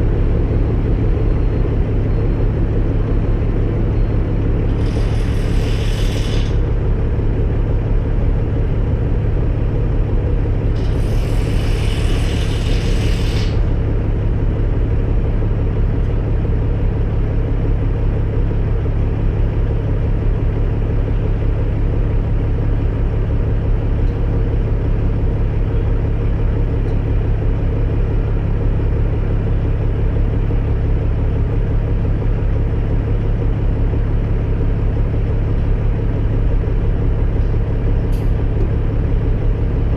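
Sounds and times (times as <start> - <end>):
diesel engine running: 0.0 - 39.9
hiss: 4.8 - 6.6, 10.8 - 13.7.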